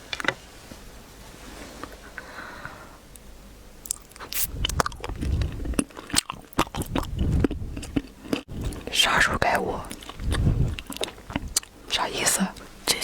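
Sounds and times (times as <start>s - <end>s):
person chewing crunchy candy: 3.8s - 12.7s.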